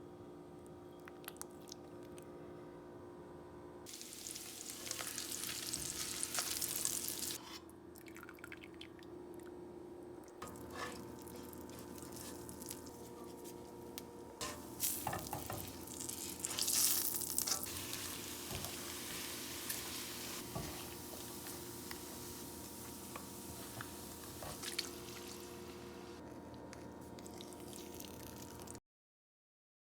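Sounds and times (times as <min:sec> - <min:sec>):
faint hum: 0:00.0 - 0:28.8
food sizzling in a frying pan: 0:03.9 - 0:07.4, 0:10.4 - 0:13.1, 0:14.4 - 0:26.2.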